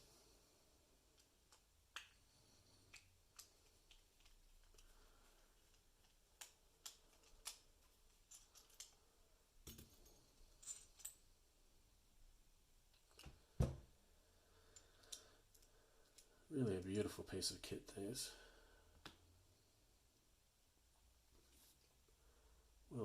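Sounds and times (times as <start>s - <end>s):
lock parts clicking and tapping: 5.6s - 9.0s.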